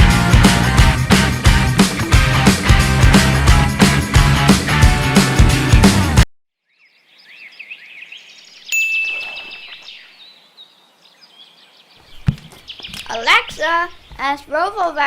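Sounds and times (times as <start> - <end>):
birds chirping: 6.6 - 15.0
bright ringing ding: 8.7 - 9.6.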